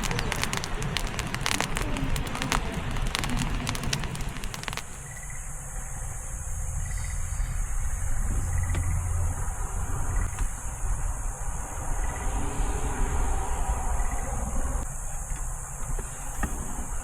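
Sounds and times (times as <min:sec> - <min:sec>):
campfire crackling and popping: 0:00.0 - 0:09.6
steady low rumble: 0:00.0 - 0:17.0.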